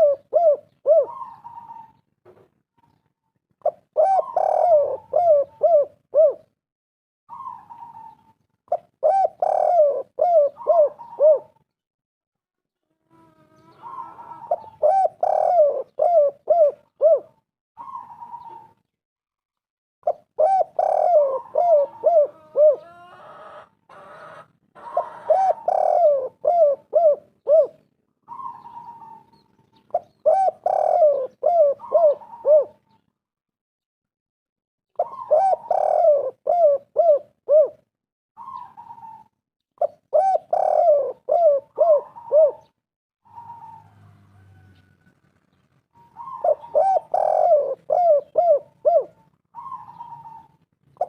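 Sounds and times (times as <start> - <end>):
higher single coo: 0.0 - 2.0, 3.7 - 6.5, 7.3 - 11.6, 12.8 - 18.8, 20.1 - 32.8, 35.0 - 37.8, 38.4 - 44.9, 46.0 - 51.0
doves cooing: 0.0 - 2.2, 3.6 - 6.6, 7.3 - 11.7, 12.8 - 18.9, 20.0 - 33.0, 35.0 - 45.3, 45.9 - 51.0.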